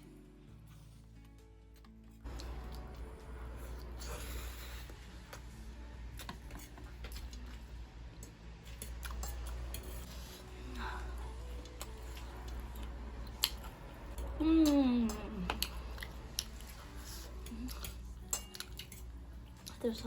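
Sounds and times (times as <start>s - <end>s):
steady low hum: 2.2s - 20.0s
utensils clicking on dishes: 8.2s - 10.1s, 17.3s - 19.1s.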